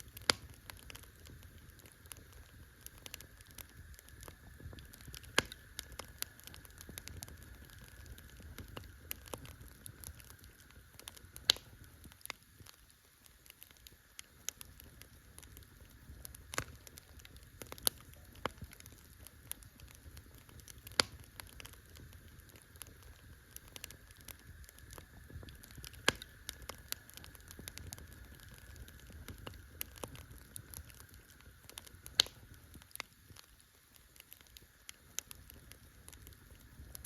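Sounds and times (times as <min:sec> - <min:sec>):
campfire crackling: 0:00.0 - 0:37.0.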